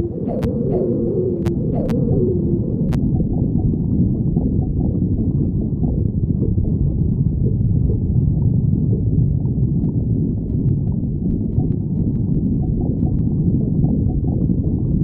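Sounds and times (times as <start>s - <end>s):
stomach growling and gurgling: 0.0s - 15.0s.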